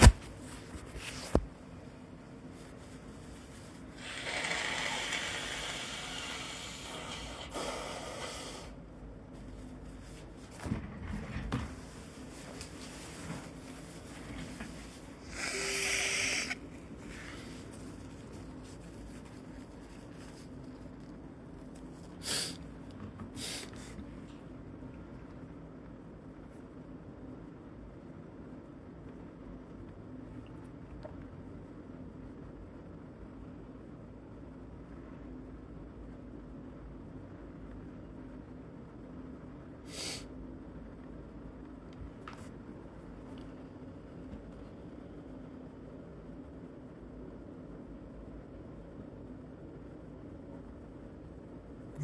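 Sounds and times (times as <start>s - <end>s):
person sniffling and snorting: 22.2s - 22.6s.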